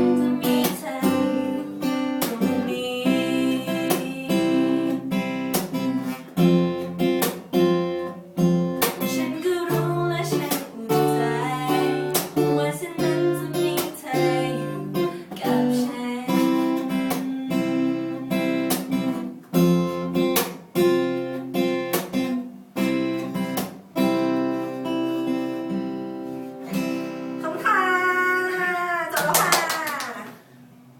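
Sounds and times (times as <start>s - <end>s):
acoustic guitar strumming chords: 0.0s - 28.4s.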